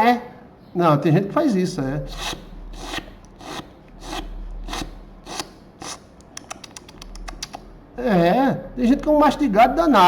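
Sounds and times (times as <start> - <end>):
teeth grinding: 2.2 - 7.7
teeth clicking: 6.2 - 7.7.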